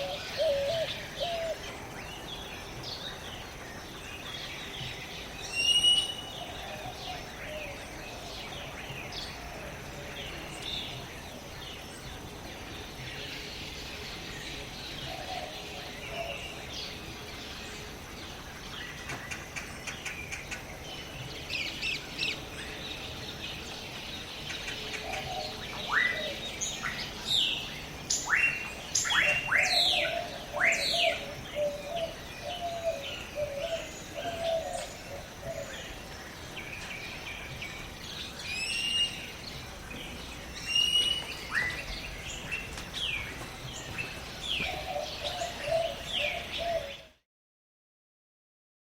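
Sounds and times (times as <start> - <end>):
background hiss: 0.0 - 47.2
birds chirping: 0.0 - 47.2
sharp downward whistled bird calls: 40.6 - 41.9.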